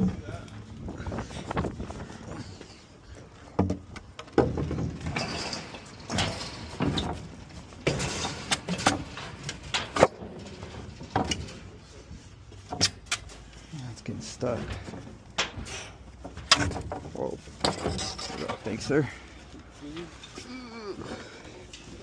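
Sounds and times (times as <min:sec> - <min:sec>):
heavy objects knocking and banging: 0:03.4 - 0:11.8, 0:14.4 - 0:18.9.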